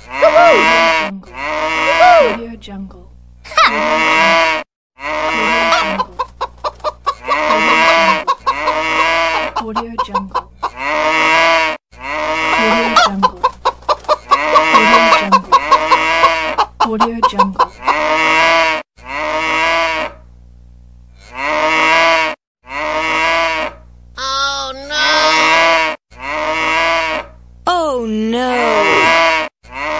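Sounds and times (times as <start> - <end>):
chicken clucking ringtone: 5.0 - 11.6, 12.3 - 18.6.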